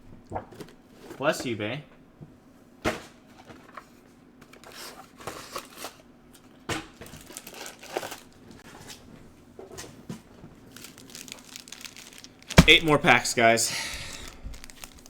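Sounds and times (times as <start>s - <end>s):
plastic wrapping crinkling: 7.0s - 8.6s, 10.6s - 15.0s.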